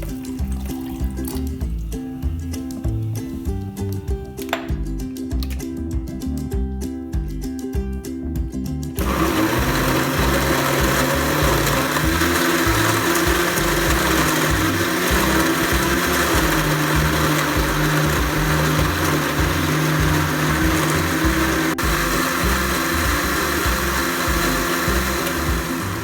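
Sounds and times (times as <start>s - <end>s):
electric blender running: 9.0s - 26.0s.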